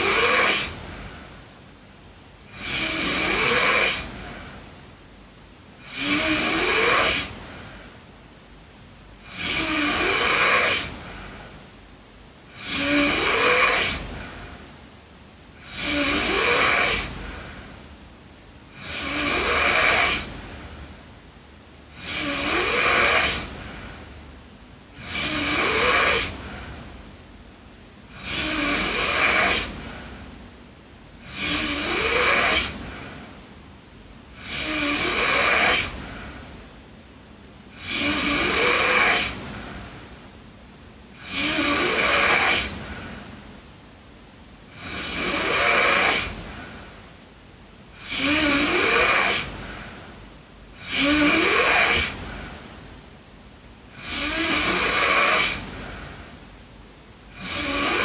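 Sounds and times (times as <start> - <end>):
girl snoring: 0.0 - 1.5, 2.4 - 4.7, 5.8 - 7.9, 9.2 - 11.6, 12.5 - 14.6, 15.6 - 18.0, 18.6 - 21.0, 21.9 - 27.0, 28.0 - 30.4, 31.2 - 33.4, 34.3 - 36.7, 37.7 - 40.2, 41.1 - 43.3, 44.7 - 47.0, 47.9 - 52.7, 53.9 - 56.5, 57.3 - 58.0.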